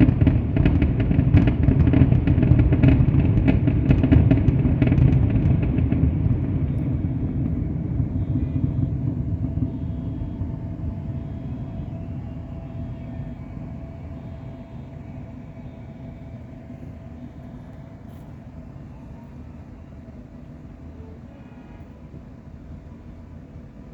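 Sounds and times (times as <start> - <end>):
echoing booms rumble: 0.0 - 17.2
fireworks crackling: 0.0 - 18.3.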